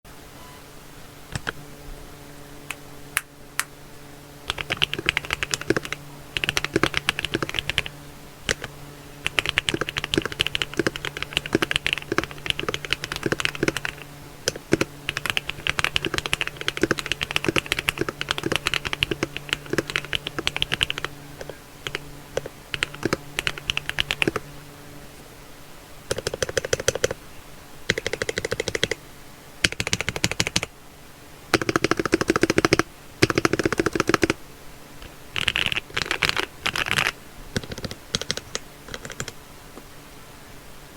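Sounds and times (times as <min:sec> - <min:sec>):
clacky mechanical keyboard typing: 0:01.3 - 0:01.6, 0:04.5 - 0:24.5, 0:26.1 - 0:27.2, 0:27.9 - 0:29.0, 0:29.6 - 0:30.7, 0:31.5 - 0:34.4, 0:35.0 - 0:39.4.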